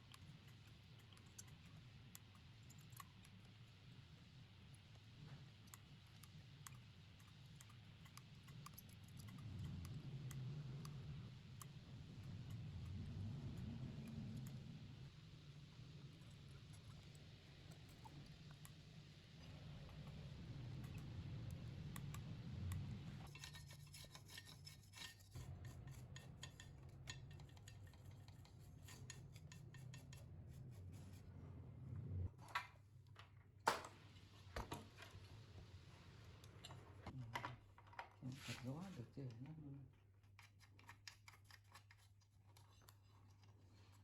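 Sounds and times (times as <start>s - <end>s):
small ticks: 5.6s - 13.0s.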